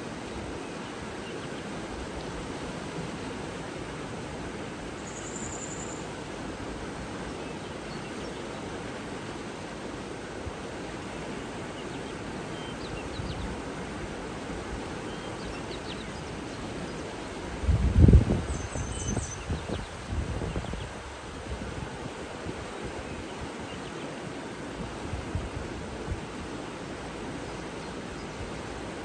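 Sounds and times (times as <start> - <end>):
running water rushing: 0.0 - 29.0
faint bird chirps: 5.0 - 6.1.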